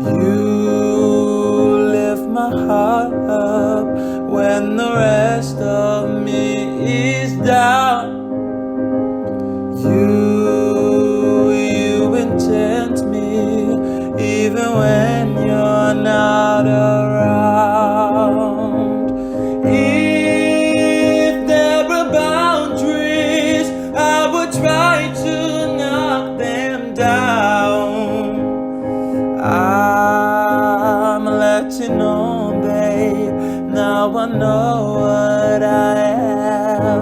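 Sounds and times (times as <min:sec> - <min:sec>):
person singing a slow ballad: 0:00.0 - 0:37.0
piano accompaniment: 0:00.0 - 0:37.0.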